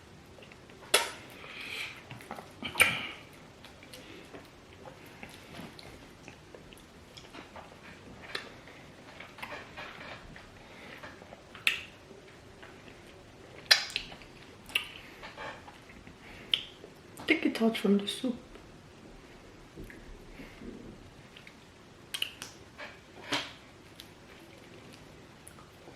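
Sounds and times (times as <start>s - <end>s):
mouth clicks: 22.1s - 22.6s.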